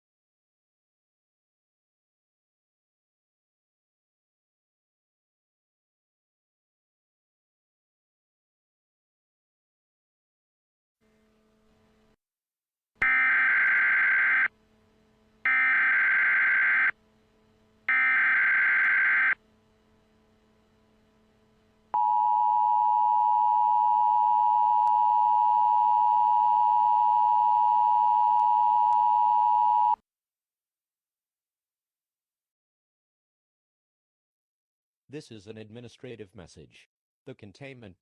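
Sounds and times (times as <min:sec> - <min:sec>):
digital data bursts: 0:15.5 - 0:16.9, 0:17.9 - 0:19.4.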